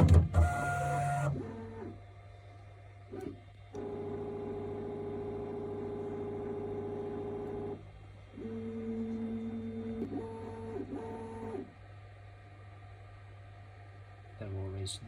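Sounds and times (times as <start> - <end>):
stepper motors whining: 0.4 - 1.8.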